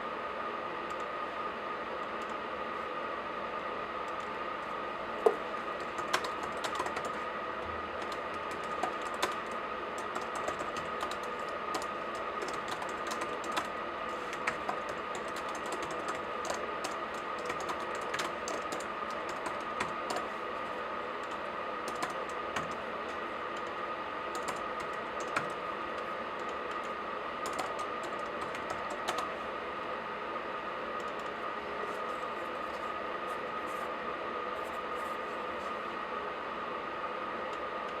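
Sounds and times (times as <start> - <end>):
laptop keyboard typing: 4.0 - 4.4, 5.2 - 20.5, 21.1 - 29.4, 31.0 - 31.4.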